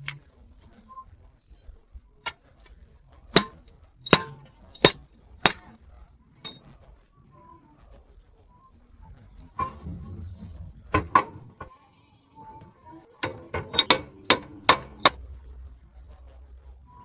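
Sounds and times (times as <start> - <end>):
metal clinking on metal: 3.3 - 5.8, 6.4 - 6.7, 13.2 - 15.2.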